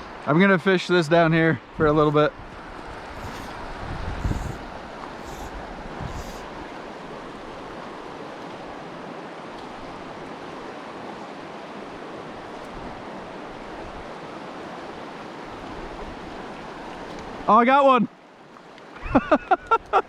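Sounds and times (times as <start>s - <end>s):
creek water rushing: 0.0s - 20.0s.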